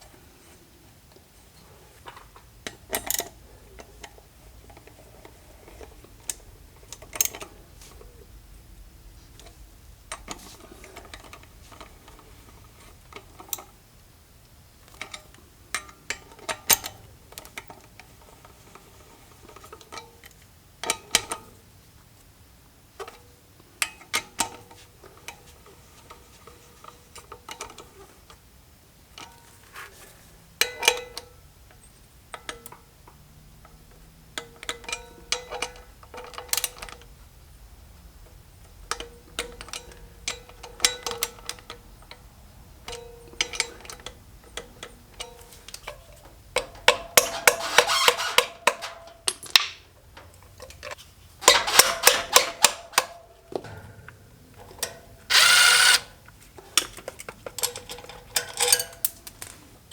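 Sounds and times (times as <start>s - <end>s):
hand tools clinking on metal: 56.9s - 59.6s.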